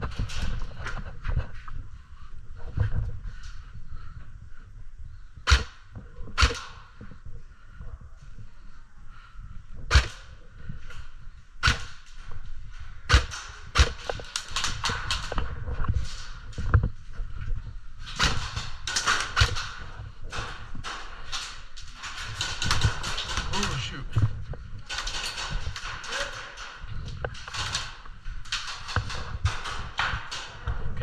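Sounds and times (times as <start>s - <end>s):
airsoft guns firing: 11.6s - 12.1s, 13.1s - 15.3s.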